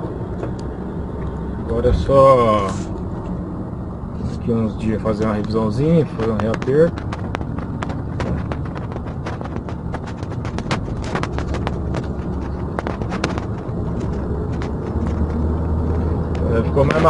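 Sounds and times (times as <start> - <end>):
car engine and tyre rumble: 0.0 - 17.0
small clicks and knocks: 5.2 - 17.0.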